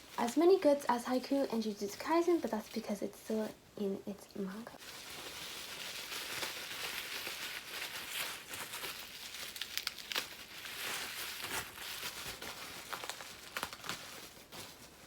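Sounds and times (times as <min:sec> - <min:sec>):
plastic packaging crinkling: 0:04.8 - 0:15.0.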